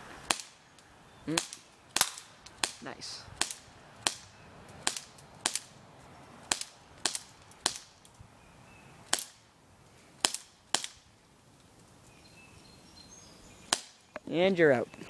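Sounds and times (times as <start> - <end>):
bb pistol shots: 1.3 - 2.8, 3.4 - 5.7, 6.5 - 7.9, 9.1 - 9.5, 10.2 - 11.0, 13.7 - 14.0.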